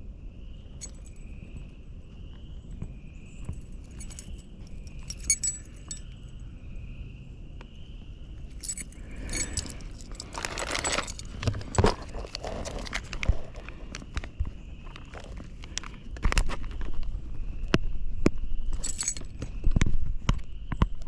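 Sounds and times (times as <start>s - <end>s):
high insect trill: 0.4s - 15.4s
metal fishing tackle clinking: 0.8s - 1.6s, 2.7s - 6.4s, 8.5s - 12.3s, 18.8s - 19.5s
sharp clicks and rattles: 2.7s - 6.2s, 8.5s - 14.3s.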